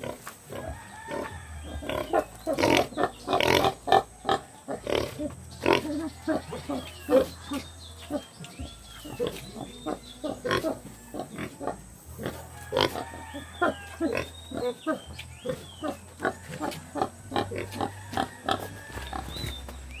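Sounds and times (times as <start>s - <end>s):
pigs grunting: 0.0s - 20.0s.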